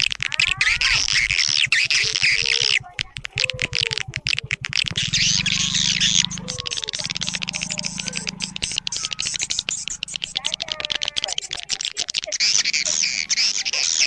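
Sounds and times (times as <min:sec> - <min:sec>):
bird twittering chirps and clicks: 0:00.0 - 0:14.0
low buzzing hum: 0:04.9 - 0:11.5.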